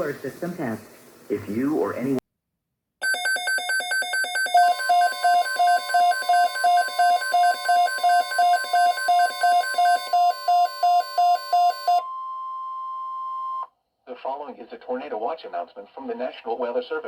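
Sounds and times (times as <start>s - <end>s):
rapid alert beeps: 3.0s - 12.0s
steady alarm tone: 3.0s - 12.1s.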